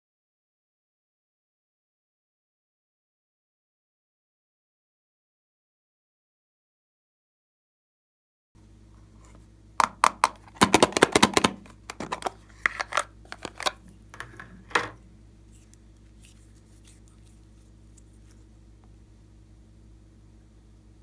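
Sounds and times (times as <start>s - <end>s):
faint steady hum: 8.6s - 21.0s
hands clicking and tapping materials: 9.8s - 14.3s.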